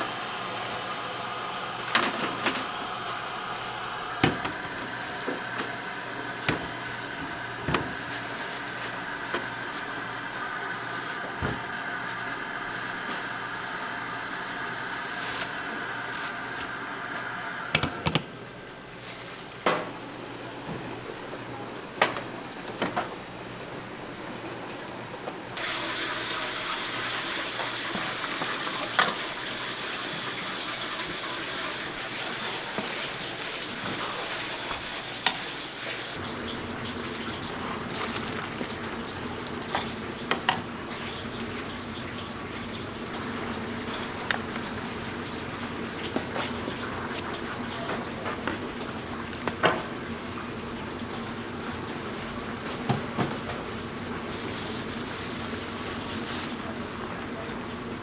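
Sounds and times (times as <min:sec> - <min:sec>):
steady hum: 0:19.6 - 0:27.2.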